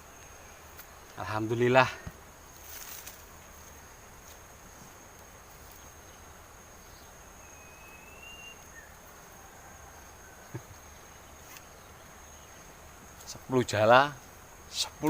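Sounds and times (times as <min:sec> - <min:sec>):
faint outdoor hiss: 0:00.0 - 0:15.0
insects trilling: 0:00.0 - 0:15.0
short high whistle: 0:07.6 - 0:08.6.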